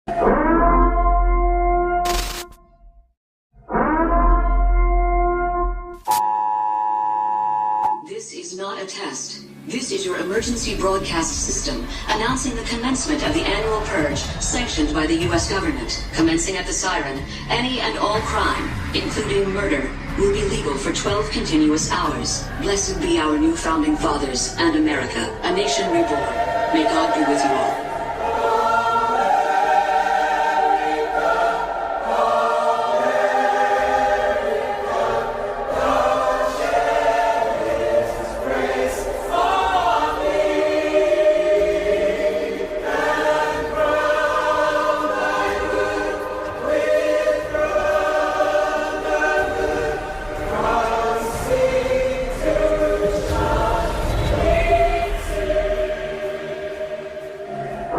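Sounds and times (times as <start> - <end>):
choir singing slow chords: 19.9 - 57.9.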